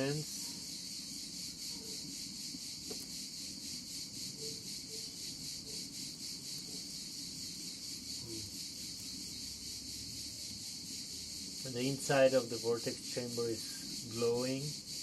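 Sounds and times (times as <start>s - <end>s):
high-pitched insect chirring: 0.0s - 15.0s.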